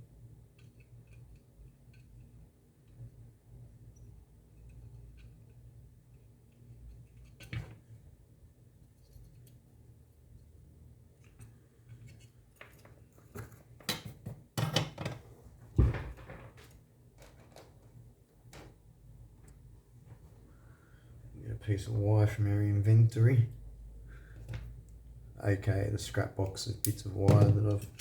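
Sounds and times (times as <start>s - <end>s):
wire scraps clicking and rattling: 16.1s - 18.8s, 26.5s - 28.0s.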